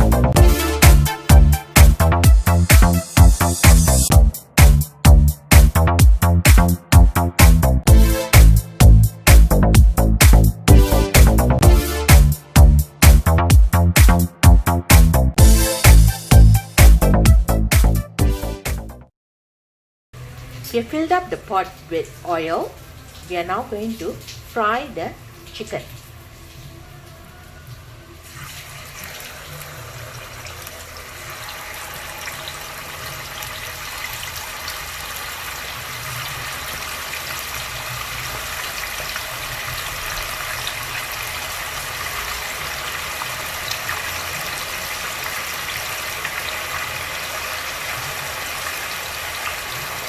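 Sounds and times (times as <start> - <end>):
chicken deep-frying in oil: 20.2 - 50.0.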